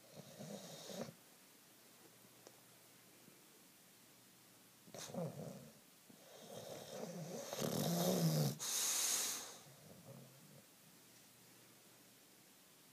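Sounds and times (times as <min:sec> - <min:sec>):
dog snoring: 0:00.0 - 0:01.2, 0:04.9 - 0:10.6
breathy hiss: 0:04.9 - 0:10.6.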